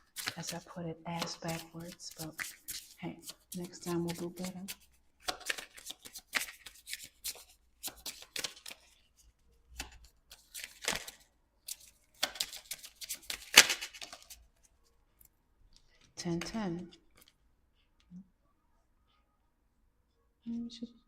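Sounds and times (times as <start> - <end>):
cards being shuffled: 0.0 - 9.1, 9.7 - 14.8.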